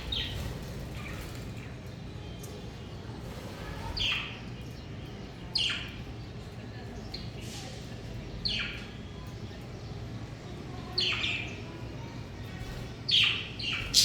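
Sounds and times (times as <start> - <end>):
budgerigars chirping: 13.2 - 14.0.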